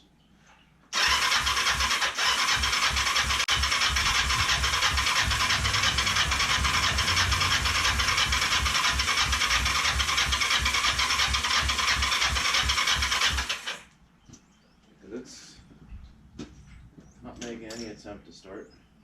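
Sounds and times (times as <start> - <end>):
motorcycle starter cranking: 1.0 - 13.9.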